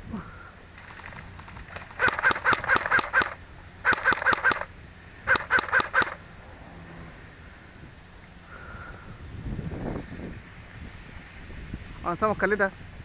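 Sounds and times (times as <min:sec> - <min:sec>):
bird calling harshly: 0:00.8 - 0:04.7, 0:05.3 - 0:06.2.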